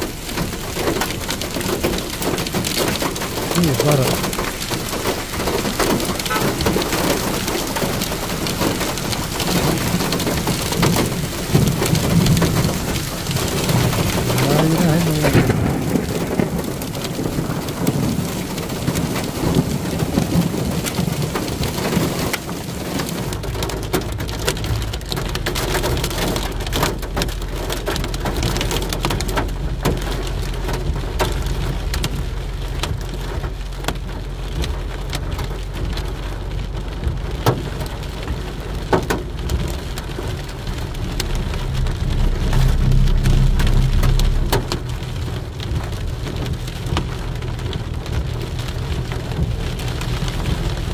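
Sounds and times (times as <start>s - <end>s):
rain on a hard surface: 0.0s - 50.9s
low hum: 39.2s - 46.5s.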